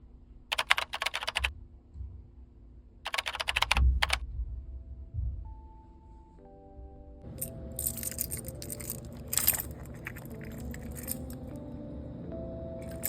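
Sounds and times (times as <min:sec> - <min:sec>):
computer keyboard typing: 0:00.5 - 0:01.5, 0:03.1 - 0:04.2, 0:07.4 - 0:11.6
soft held musical notes: 0:04.2 - 0:13.0.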